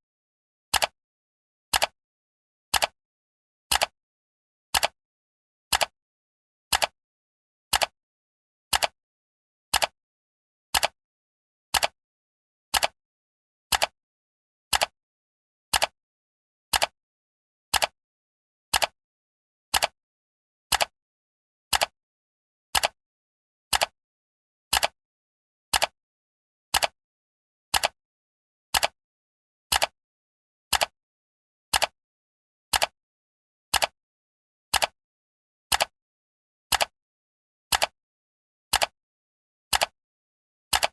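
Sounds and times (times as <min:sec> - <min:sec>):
clock ticking: 0:35.7 - 0:35.9.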